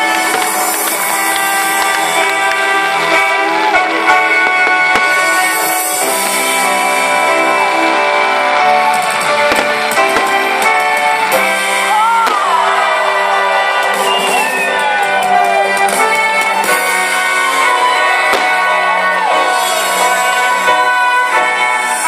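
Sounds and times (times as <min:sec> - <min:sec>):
loud rock music with guitar: 0:00.0 - 0:22.0.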